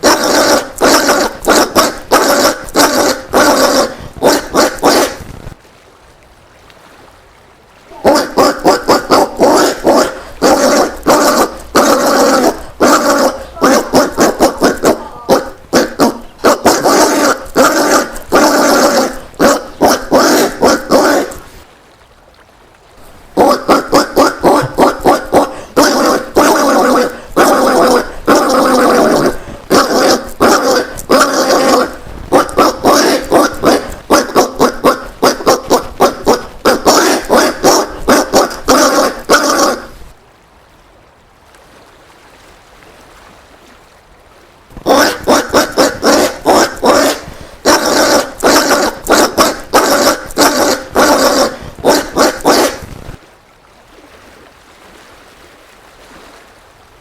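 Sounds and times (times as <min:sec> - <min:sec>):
peccary harsh calls: 0:00.0 - 0:05.3, 0:07.9 - 0:21.6, 0:23.4 - 0:40.0, 0:44.8 - 0:52.9.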